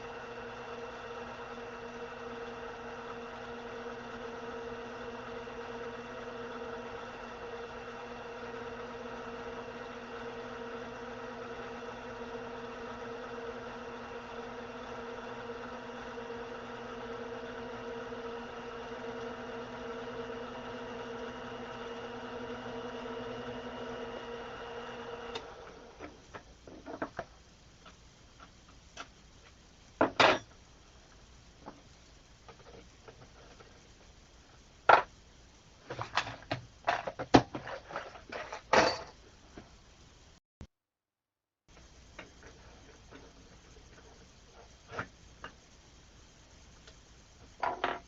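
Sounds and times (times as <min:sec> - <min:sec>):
lathe motor humming: 0:00.0 - 0:26.0.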